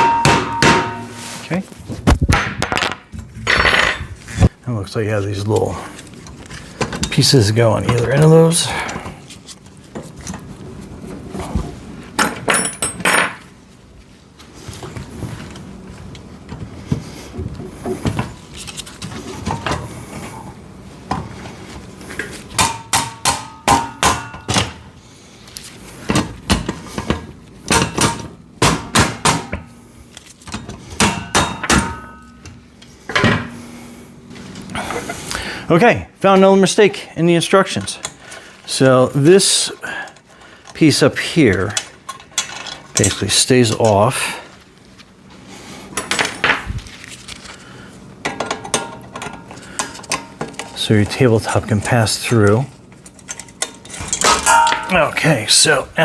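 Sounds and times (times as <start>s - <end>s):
steel parts knocking and clanking: 53.1s - 55.1s.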